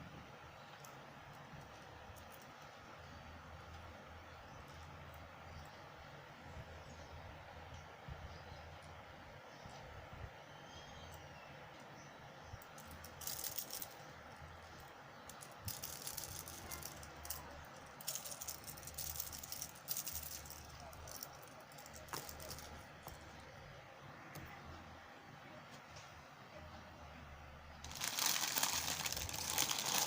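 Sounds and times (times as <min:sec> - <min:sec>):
plastic packaging rattling and clicking: 0:12.8 - 0:14.1, 0:15.3 - 0:23.2, 0:27.8 - 0:30.0.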